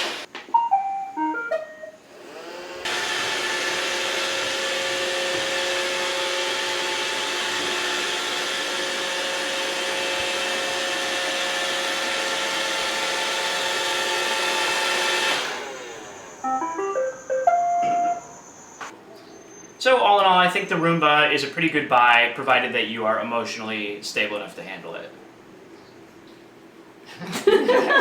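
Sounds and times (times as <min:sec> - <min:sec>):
vacuum cleaner motor running: 0:00.0 - 0:00.3, 0:02.0 - 0:16.5.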